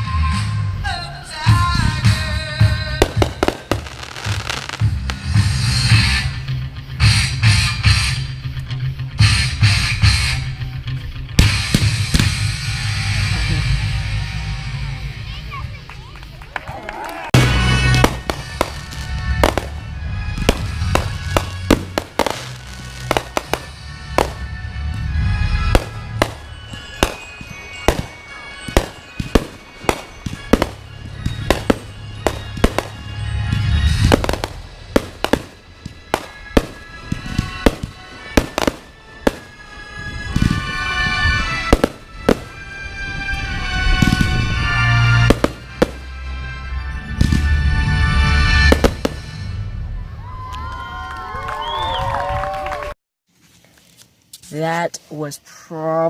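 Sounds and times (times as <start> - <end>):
firework bangs: 1.8 - 6.4, 11.4 - 12.9, 17.3 - 50.0.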